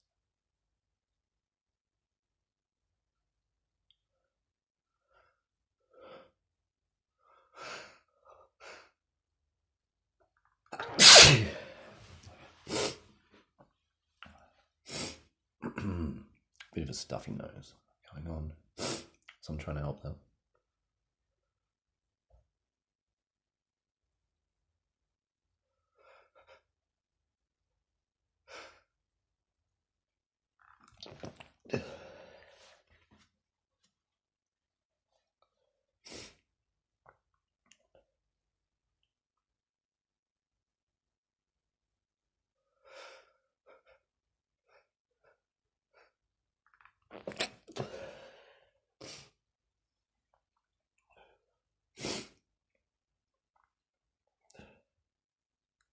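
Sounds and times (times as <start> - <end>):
man sneezing: 10.8 - 11.8
man sniffing: 10.9 - 11.8, 52.0 - 52.4
man breathing in: 47.8 - 48.7.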